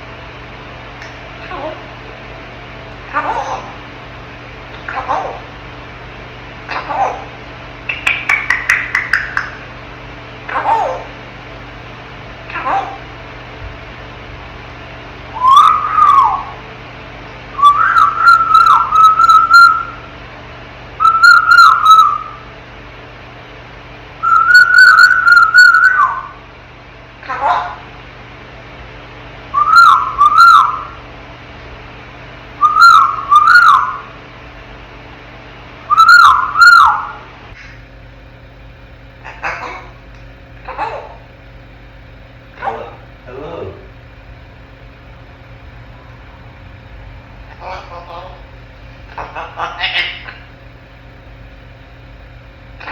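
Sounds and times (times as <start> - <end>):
low background hum: 0.0 - 52.9
parrot whistling: 3.1 - 3.8, 4.8 - 5.5, 6.7 - 9.7, 10.5 - 11.1, 15.3 - 16.6, 17.5 - 20.1, 21.0 - 22.5, 24.2 - 26.4, 29.5 - 31.0, 32.6 - 34.2, 35.9 - 37.8, 39.2 - 40.0, 47.5 - 48.4, 49.1 - 50.5.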